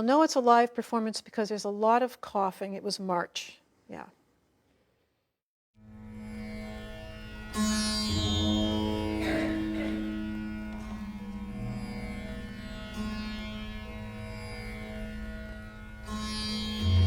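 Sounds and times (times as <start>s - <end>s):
plucked vina notes: 7.4s - 13.7s.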